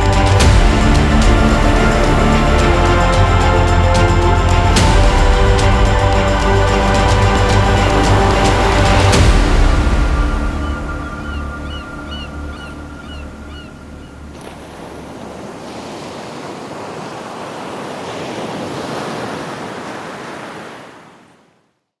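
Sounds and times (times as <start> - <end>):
background music: 0.0 - 14.4
ocean surf washing in: 0.0 - 21.4.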